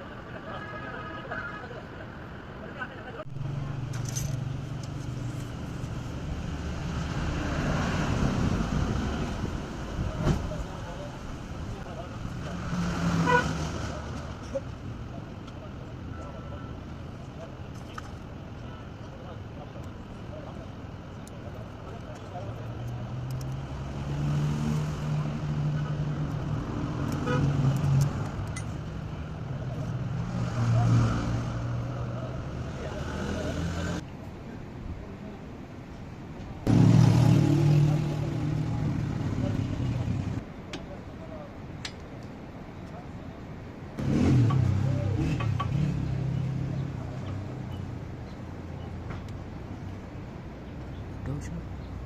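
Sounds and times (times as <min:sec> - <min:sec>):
road traffic: 0:00.0 - 0:52.0
motor vehicle running: 0:36.7 - 0:40.4, 0:44.0 - 0:52.0.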